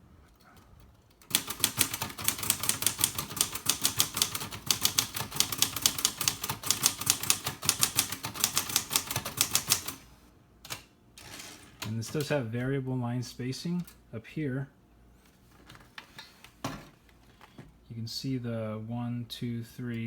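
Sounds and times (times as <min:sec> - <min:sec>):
typewriter keystrokes: 0:01.0 - 0:10.0.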